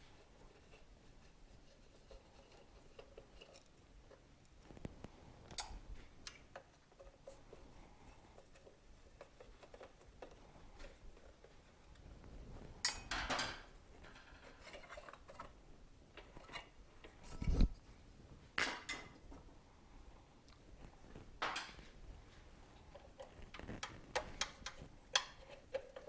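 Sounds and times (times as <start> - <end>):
metal tools clinking and scraping: 12.8 - 15.6.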